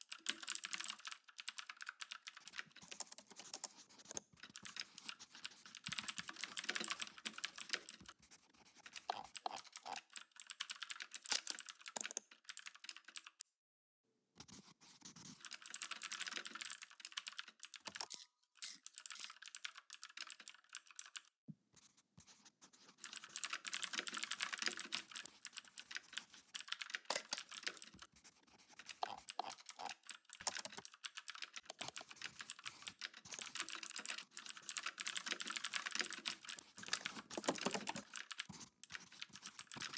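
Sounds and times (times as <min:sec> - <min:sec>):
computer keyboard typing: 0:00.0 - 0:13.4, 0:14.5 - 0:21.3, 0:22.2 - 0:39.9.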